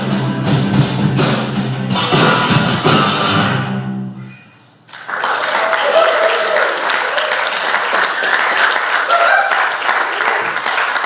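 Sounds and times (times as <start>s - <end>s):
audience clapping: 4.9s - 11.0s
cheers: 5.0s - 11.0s.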